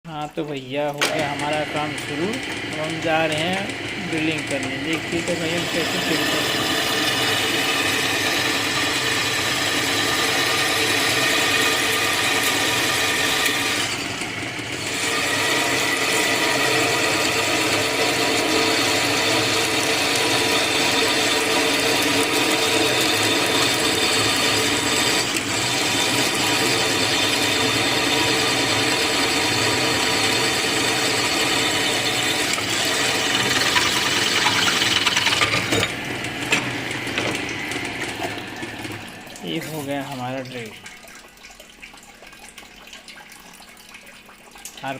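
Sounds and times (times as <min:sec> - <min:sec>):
drill motor whining: 0:01.0 - 0:38.4.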